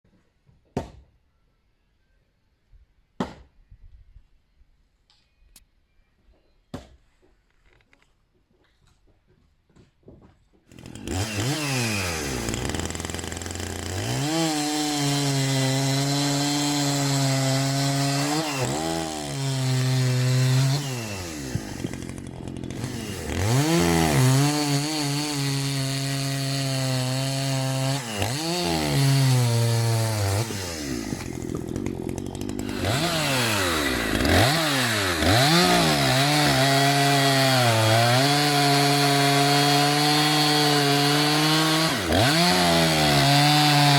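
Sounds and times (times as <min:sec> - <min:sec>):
chainsaw revving and cutting wood: 0:10.7 - 0:43.9.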